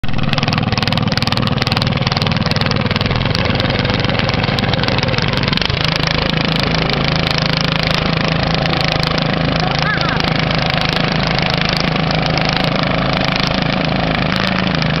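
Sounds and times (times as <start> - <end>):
lawn mower engine running: 0.0 - 15.0.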